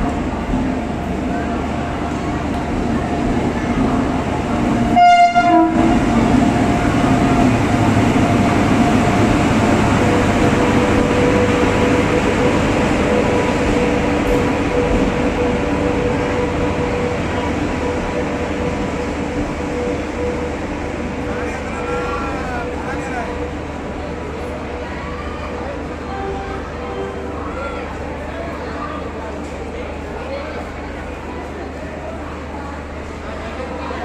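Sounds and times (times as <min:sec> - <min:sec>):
train wheels rumbling: 0:00.0 - 0:34.0
locomotive horn blast: 0:04.9 - 0:06.1.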